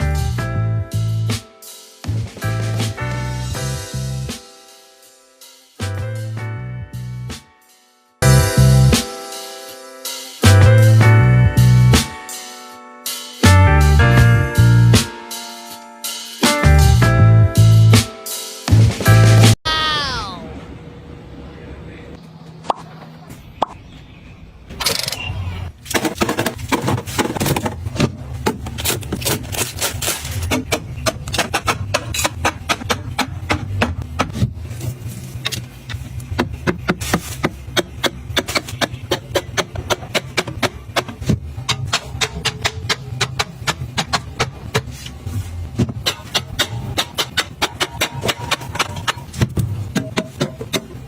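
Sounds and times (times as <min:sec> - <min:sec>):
hard objects clicking and knocking: 0:25.8 - 0:34.6, 0:35.4 - 0:44.9, 0:45.8 - 0:51.0.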